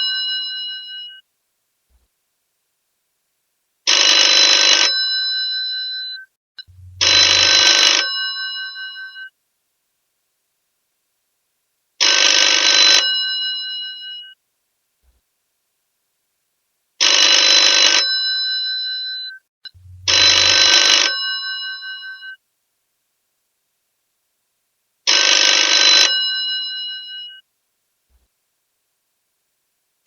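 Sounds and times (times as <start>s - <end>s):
telephone bell ringing: 3.9s - 6.2s, 7.0s - 9.3s, 12.0s - 14.0s, 17.0s - 19.3s, 20.1s - 22.4s, 25.1s - 27.4s.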